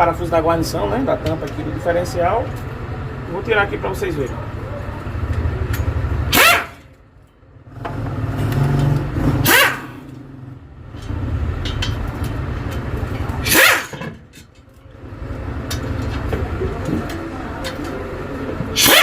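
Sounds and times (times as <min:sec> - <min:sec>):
low mechanical drone: 0:00.0 - 0:19.0
pneumatic tool spinning with air hiss: 0:13.4 - 0:14.0, 0:18.8 - 0:19.0.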